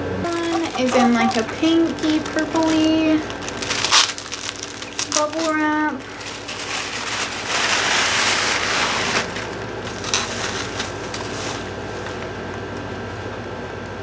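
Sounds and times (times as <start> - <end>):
bubble wrap crinkling: 0.2 - 13.2.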